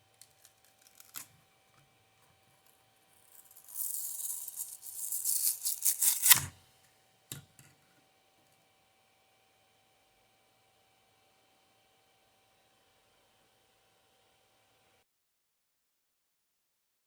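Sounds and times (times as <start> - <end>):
plastic puzzle pieces rattling: 3.4 - 6.3.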